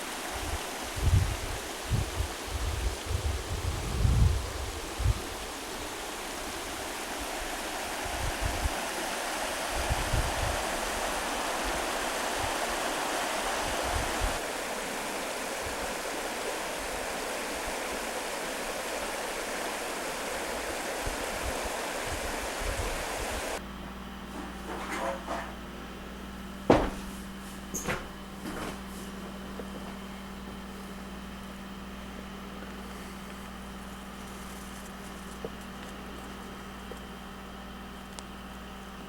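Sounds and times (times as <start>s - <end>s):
stream water rushing: 0.0s - 3.1s, 4.7s - 23.6s.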